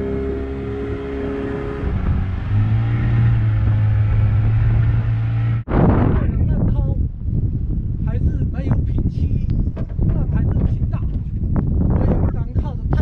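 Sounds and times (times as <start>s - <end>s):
boat engine drone: 0.0s - 5.7s.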